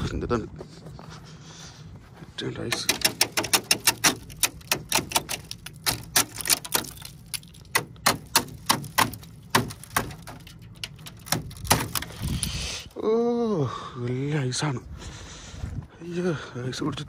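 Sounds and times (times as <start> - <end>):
ice crunching and cracking: 2.8 - 13.0.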